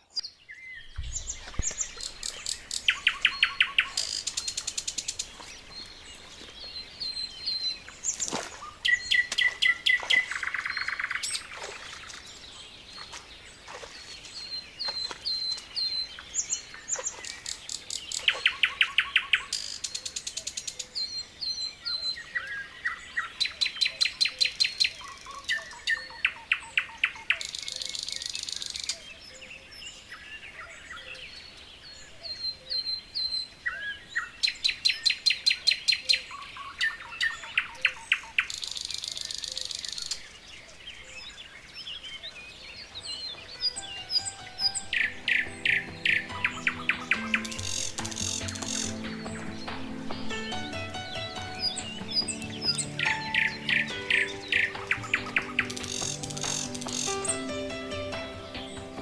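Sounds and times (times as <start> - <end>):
birds chirping: 0.0 - 59.0
bird trills: 0.8 - 6.0, 43.4 - 59.0.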